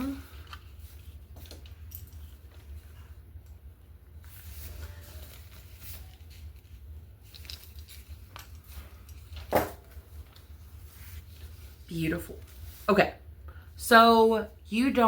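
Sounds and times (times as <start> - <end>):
paper rustling: 4.0 - 13.0.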